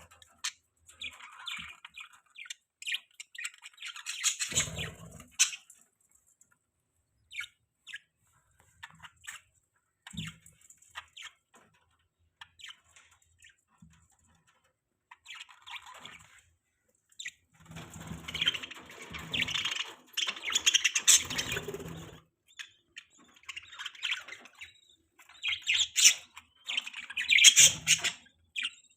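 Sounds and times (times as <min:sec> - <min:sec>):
budgerigars chirping: 0:00.0 - 0:05.8, 0:07.2 - 0:08.2, 0:18.0 - 0:28.9.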